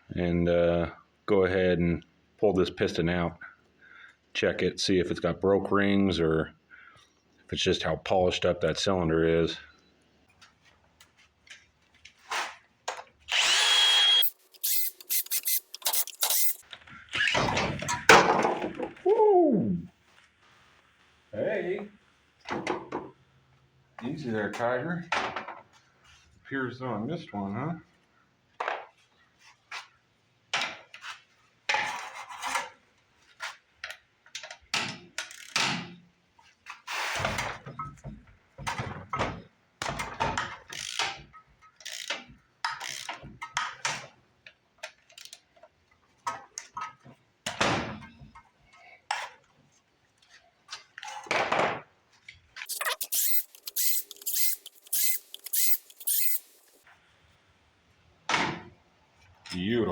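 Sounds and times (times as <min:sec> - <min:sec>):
sharp clicks: 0:13.4 - 0:16.6, 0:52.7 - 0:56.8.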